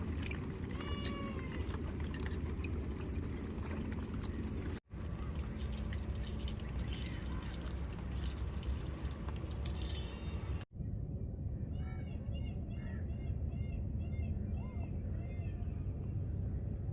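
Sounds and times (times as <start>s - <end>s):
small clicks and splashes: 0.0s - 10.6s
water pouring and trickling: 0.0s - 10.7s.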